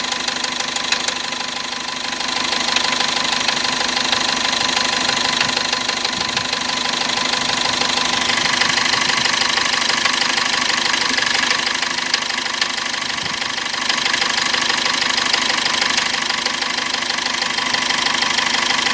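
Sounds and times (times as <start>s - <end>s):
diesel engine knocking: 0.0s - 18.9s.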